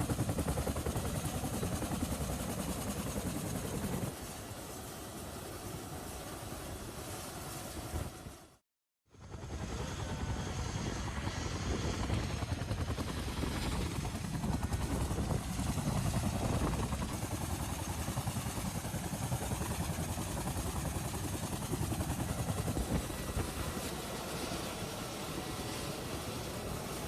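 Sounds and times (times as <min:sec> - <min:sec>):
helicopter rotor and engine: 0:00.0 - 0:27.0.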